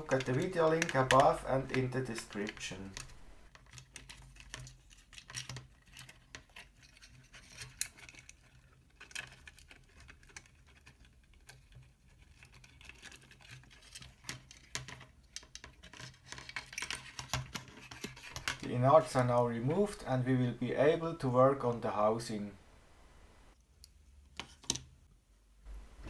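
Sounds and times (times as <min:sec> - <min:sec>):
plastic housing clicks and scratches: 0:12.4 - 0:18.6.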